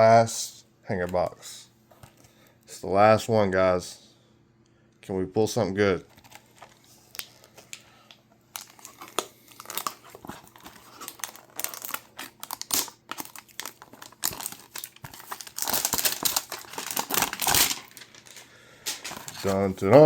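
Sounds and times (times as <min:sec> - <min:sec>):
packaging crinkling and tearing: 0:06.1 - 0:20.0.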